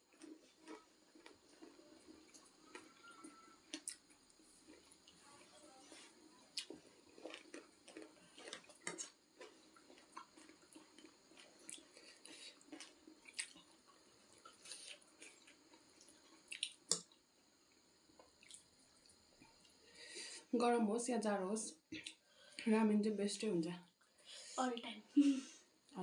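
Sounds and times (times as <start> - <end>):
slurping and chewing: 0.0 - 20.4.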